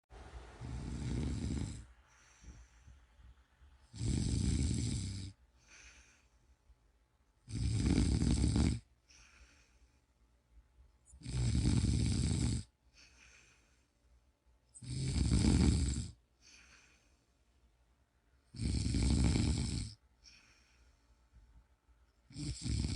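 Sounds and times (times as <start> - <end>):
faint breathing: 0.3 - 6.8, 9.0 - 10.4, 12.8 - 14.3, 16.3 - 17.7, 20.2 - 21.6
loud snoring: 0.6 - 2.0, 3.9 - 5.4, 7.5 - 8.9, 11.2 - 12.7, 14.8 - 16.2, 18.5 - 20.0, 22.3 - 22.9.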